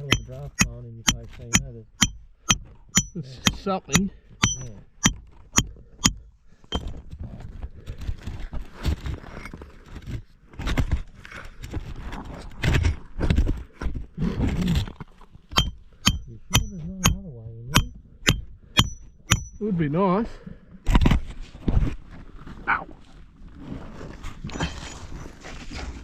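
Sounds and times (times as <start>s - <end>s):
sharp ringing knocks: 0.0s - 6.9s, 15.5s - 19.6s
scraping and rustling on rock: 6.7s - 16.1s, 20.8s - 26.0s.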